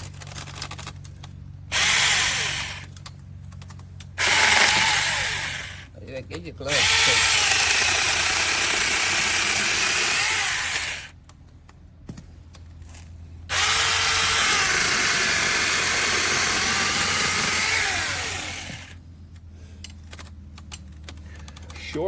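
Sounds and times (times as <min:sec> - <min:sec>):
mini chainsaw cutting wood: 0:01.7 - 0:02.9, 0:04.2 - 0:05.9, 0:06.7 - 0:11.2, 0:13.5 - 0:19.0.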